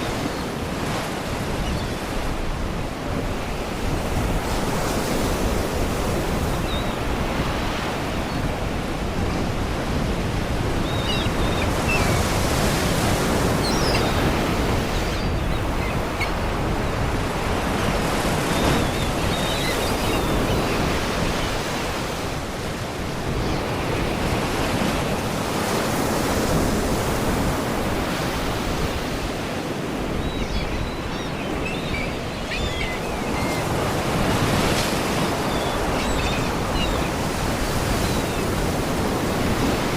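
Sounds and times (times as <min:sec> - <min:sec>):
sea waves breaking on rocks: 0:00.0 - 0:39.9
distant seagull cries: 0:10.4 - 0:16.8, 0:30.1 - 0:39.2.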